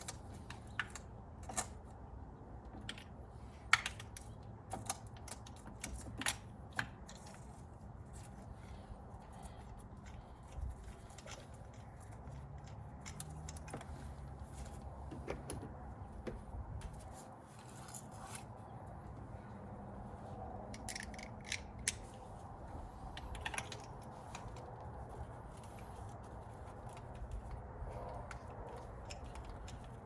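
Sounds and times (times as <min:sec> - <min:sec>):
metallic clicks of hand tools: 0:11.1 - 0:13.9, 0:20.7 - 0:22.1.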